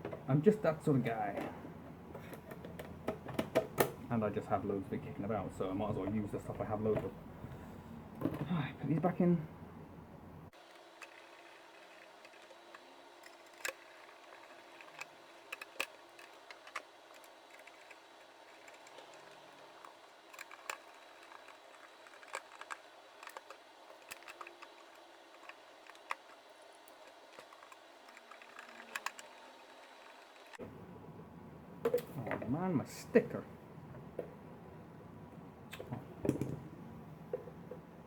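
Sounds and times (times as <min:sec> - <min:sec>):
low room hum: 0:00.0 - 0:38.0
small parts clicking and tapping: 0:10.5 - 0:30.6.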